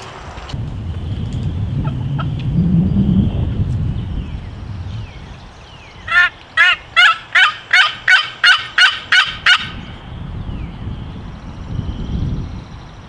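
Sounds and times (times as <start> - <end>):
turkey yelps: 6.1 - 9.8.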